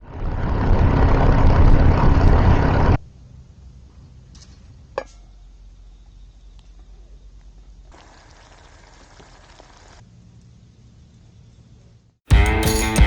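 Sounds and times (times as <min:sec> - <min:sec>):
motorcycle engine rumbling: 0:00.0 - 0:07.9.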